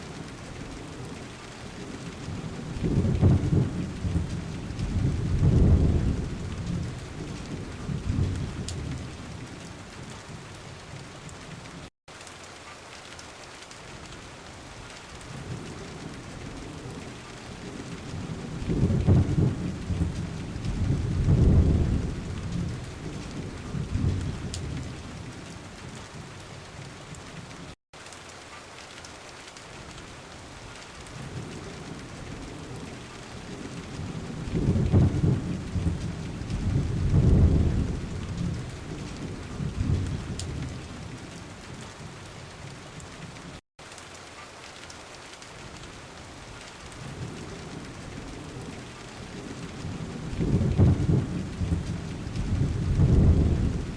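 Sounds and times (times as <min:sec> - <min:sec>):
steady rain: 0:00.0 - 0:53.9
rolling thunder: 0:00.4 - 0:09.6, 0:15.3 - 0:25.5, 0:31.2 - 0:41.8, 0:47.0 - 0:53.9.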